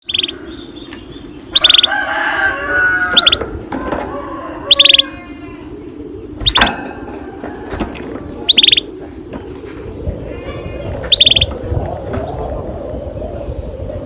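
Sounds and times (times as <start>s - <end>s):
canary trilling: 0.0s - 0.8s, 1.5s - 3.5s, 4.2s - 5.7s, 6.4s - 9.0s, 10.3s - 11.6s
low drawn-out bird call: 0.0s - 14.0s.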